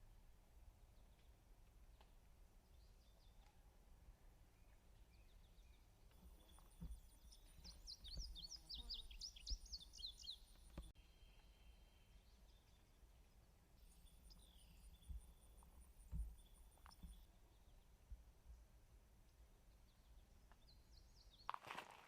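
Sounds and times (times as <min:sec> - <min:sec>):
bird chirping: 0:01.0 - 0:18.6, 0:19.2 - 0:21.5
footsteps on a trail: 0:06.2 - 0:09.8, 0:21.4 - 0:22.0.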